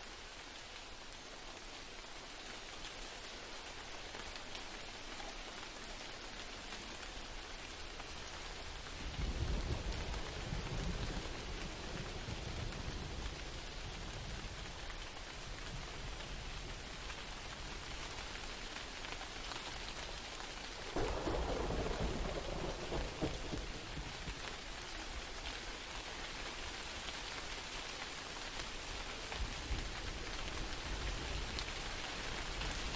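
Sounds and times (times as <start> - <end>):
rain falling: 0.0 - 32.9
thunder rumble: 21.0 - 24.5.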